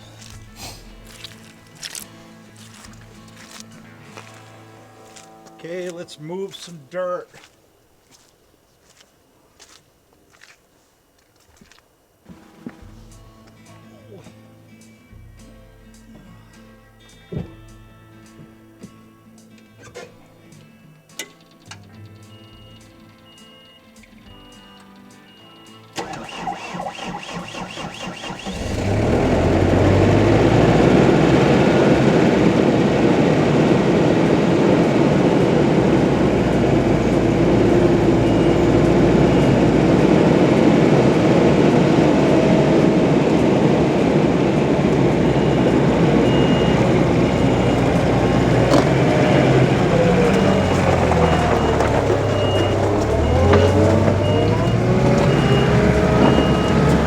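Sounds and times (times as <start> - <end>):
skid steer engine under load: 0.0 - 6.7, 26.0 - 57.0
backup alarm beeping: 33.0 - 57.0.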